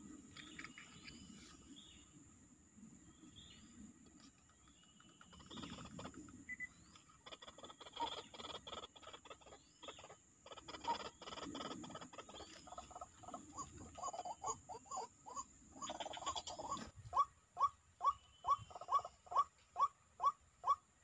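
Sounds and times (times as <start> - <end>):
insect hiss: 0.0 - 21.0
small birds chirping: 0.0 - 21.0
waterhen harsh clicking calls: 4.8 - 20.9.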